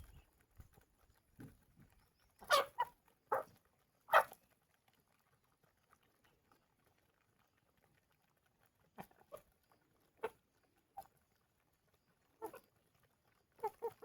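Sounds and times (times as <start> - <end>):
short animal calls: 2.4 - 3.5.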